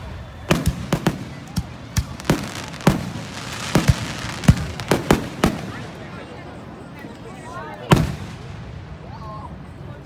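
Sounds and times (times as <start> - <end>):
fireworks crackling hiss: 0.0 - 6.1
fireworks exploding bangs: 0.0 - 6.2, 7.9 - 8.6.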